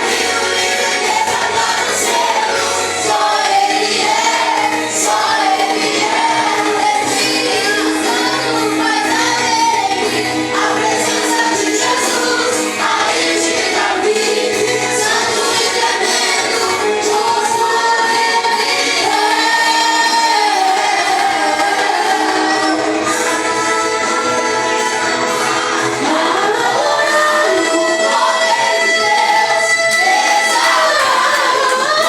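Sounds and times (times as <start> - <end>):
group singing worship song: 0.0 - 32.0.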